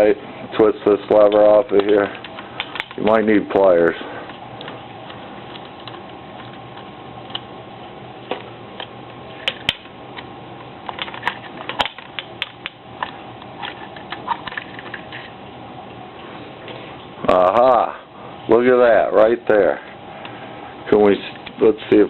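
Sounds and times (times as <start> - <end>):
faint steady hum: 0.0 - 22.0
magazine parts clicking and knocking: 1.7 - 3.0, 10.8 - 15.2.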